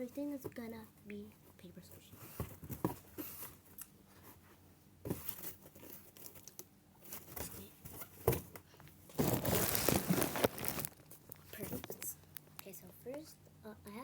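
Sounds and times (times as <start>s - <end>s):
paper and cardboard rustling: 1.5s - 12.1s.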